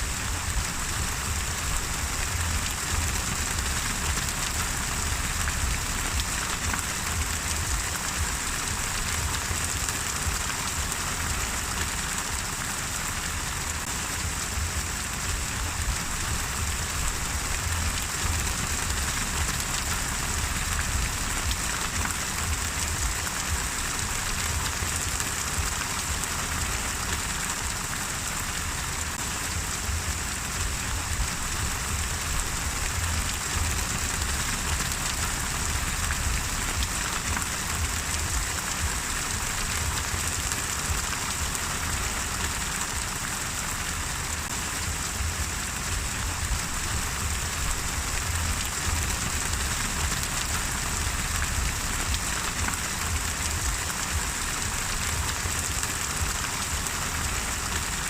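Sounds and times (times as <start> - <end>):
low rumble: 0.0 - 10.9, 14.1 - 24.9, 29.5 - 41.0, 44.9 - 55.8
steady rain falling: 0.0 - 58.0.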